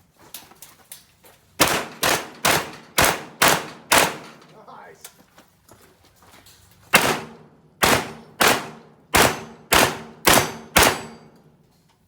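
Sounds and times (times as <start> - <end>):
shotgun shots echoing: 1.6 - 4.5, 6.9 - 11.4.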